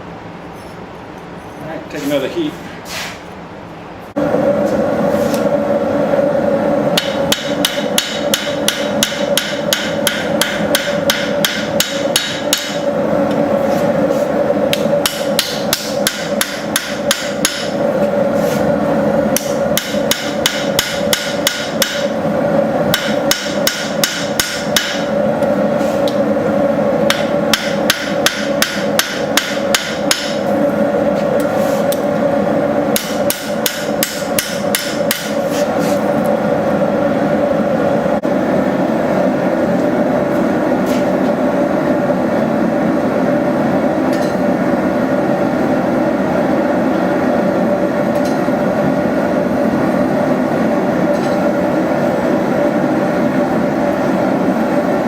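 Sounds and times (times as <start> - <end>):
steady hum: 0.0 - 55.0
hammer striking blade on anvil: 7.0 - 12.8, 14.7 - 17.8, 19.4 - 22.1, 22.9 - 25.1, 27.1 - 30.4, 33.0 - 35.4.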